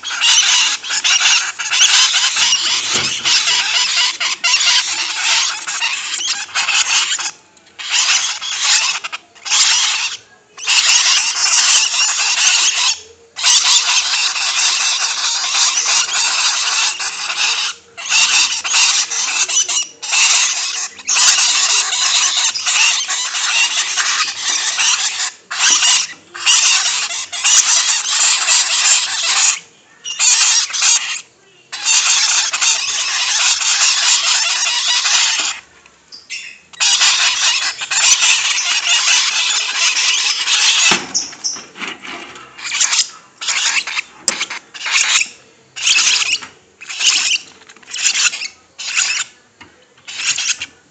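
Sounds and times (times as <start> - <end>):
bird chicks begging calls: 0.0 - 49.4, 50.0 - 50.7.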